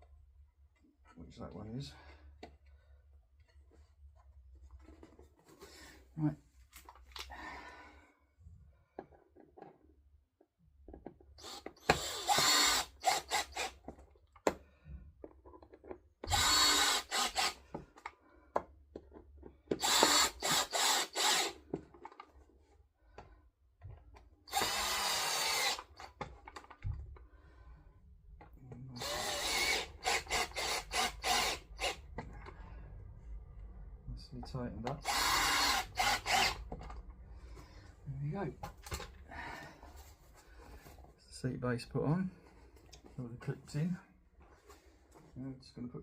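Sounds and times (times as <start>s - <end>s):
power drill-driver driving screws: 11.4s - 13.8s, 16.2s - 17.6s, 19.7s - 21.6s, 24.5s - 26.2s, 29.0s - 32.1s, 34.8s - 36.8s.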